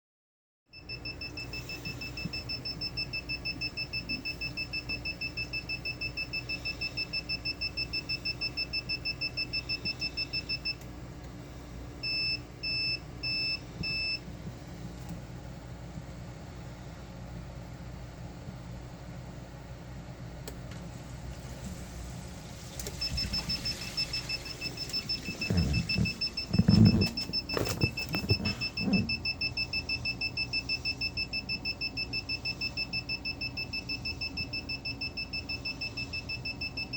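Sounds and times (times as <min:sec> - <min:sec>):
steady low hum: 0:00.8 - 0:36.9
alarm beeping: 0:22.9 - 0:36.9.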